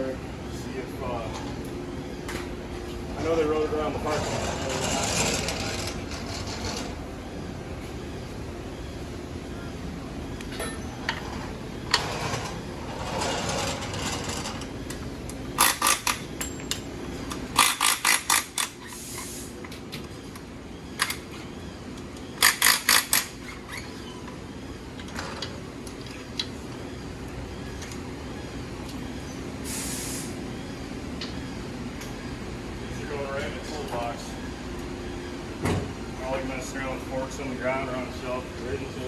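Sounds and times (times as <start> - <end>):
low shop hum: 0.0 - 39.0
air hiss: 18.8 - 19.6, 29.6 - 30.4.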